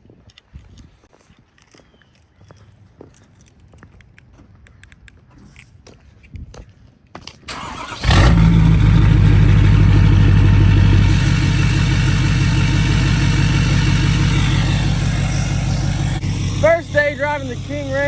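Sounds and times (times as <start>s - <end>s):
truck engine starting and idling: 7.5s - 18.0s.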